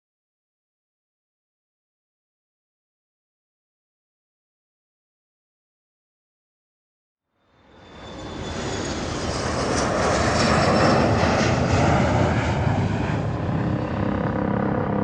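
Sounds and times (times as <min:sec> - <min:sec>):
jet airplane flying past: 0:07.4 - 0:15.0.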